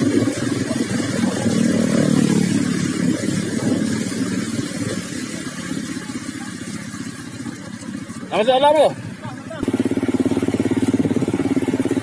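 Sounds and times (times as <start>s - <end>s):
vehicle engine running: 0.0s - 12.0s.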